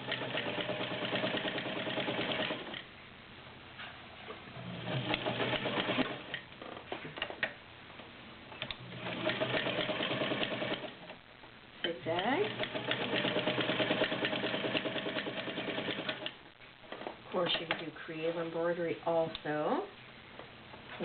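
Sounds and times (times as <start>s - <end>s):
sewing machine stitching: 0.0s - 2.8s, 4.6s - 6.4s, 8.6s - 11.0s, 12.2s - 16.4s.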